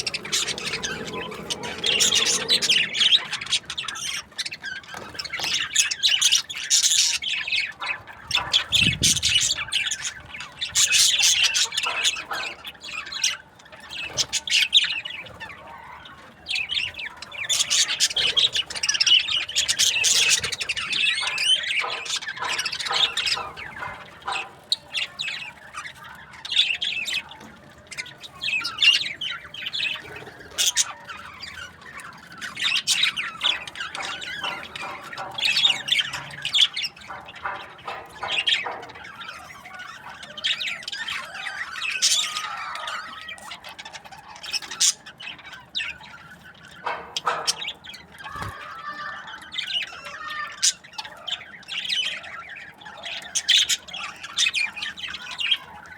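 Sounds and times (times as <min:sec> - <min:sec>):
budgerigars chattering and chirping: 0:00.0 - 0:55.9.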